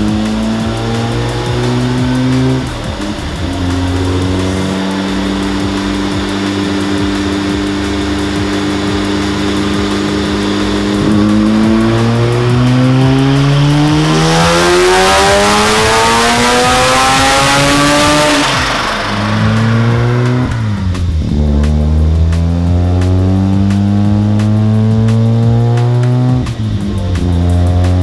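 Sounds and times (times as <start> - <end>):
rotary engine revving on dyno: 0.0 - 28.0
turbo hiss: 0.0 - 28.0.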